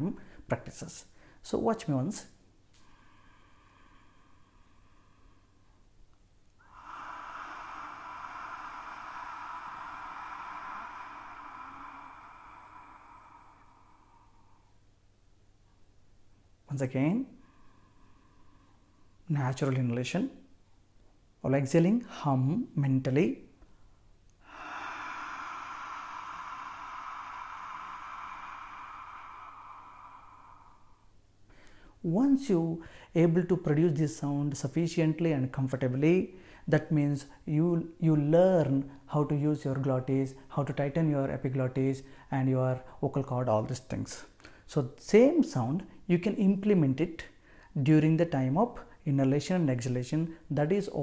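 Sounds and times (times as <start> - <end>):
hissing exhaled breath: 6.6 - 14.9, 24.4 - 32.0.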